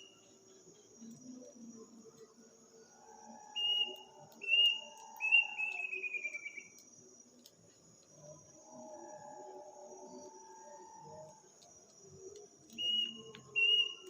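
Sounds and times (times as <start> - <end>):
crickets chirping: 0.0 - 14.0
night bird whistling: 3.5 - 6.8, 12.7 - 14.0.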